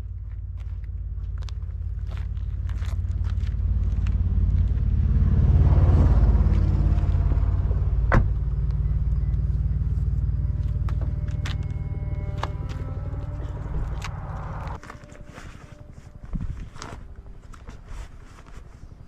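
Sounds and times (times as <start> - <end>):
vehicle passing with low rumble: 0.0 - 18.8.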